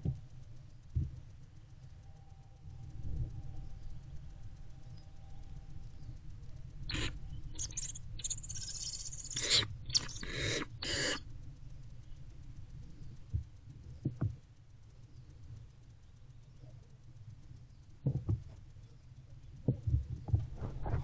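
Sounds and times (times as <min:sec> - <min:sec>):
owlets rasping hisses: 0:06.9 - 0:11.2.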